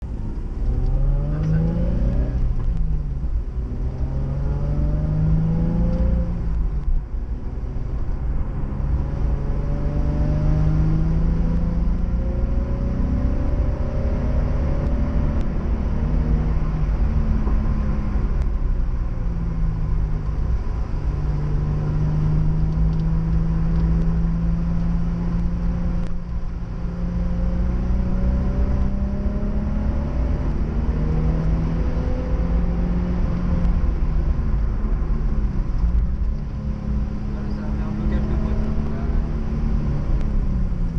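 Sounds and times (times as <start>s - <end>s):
road and tyre noise: 0.0s - 40.9s
car engine revving hard: 0.6s - 2.7s, 3.6s - 6.6s, 8.6s - 18.1s, 26.9s - 34.3s, 36.6s - 40.9s.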